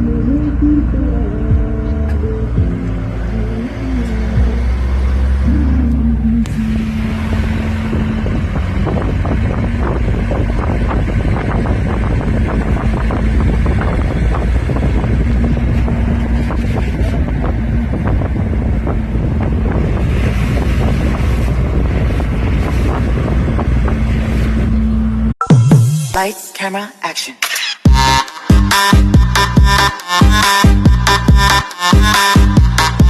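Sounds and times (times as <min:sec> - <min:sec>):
vehicle rumble: 0:00.0 - 0:25.4
wind buffeting microphone: 0:03.9 - 0:25.3.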